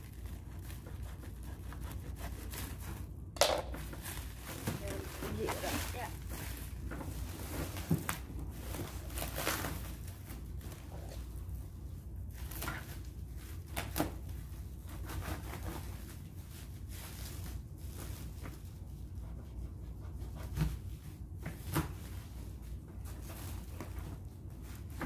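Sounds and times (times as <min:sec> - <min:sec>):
cardboard packaging rustling: 0:02.5 - 0:18.4.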